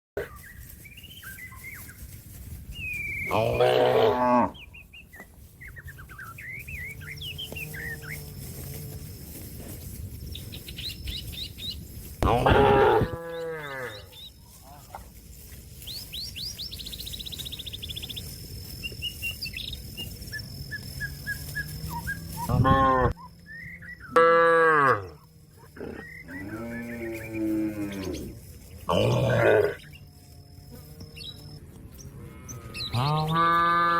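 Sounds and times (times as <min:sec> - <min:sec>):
birds chirping and trilling: 0:00.2 - 0:33.7
cow mooing: 0:03.3 - 0:04.6, 0:12.2 - 0:14.1, 0:24.1 - 0:25.2.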